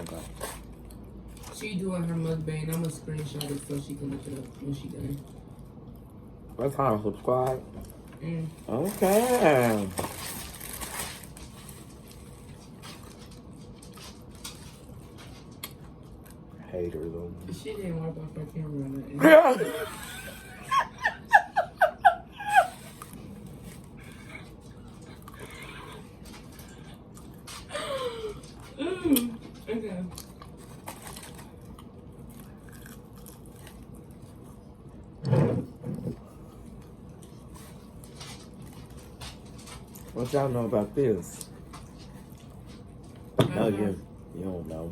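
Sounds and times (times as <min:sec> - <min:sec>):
food handling clicks and rustles: 0:08.8 - 0:15.9
quiet chewing: 0:11.4 - 0:16.6, 0:22.8 - 0:35.2, 0:35.9 - 0:40.2, 0:41.3 - 0:43.4
chewing and mouth sounds: 0:23.0 - 0:27.7, 0:28.3 - 0:35.2.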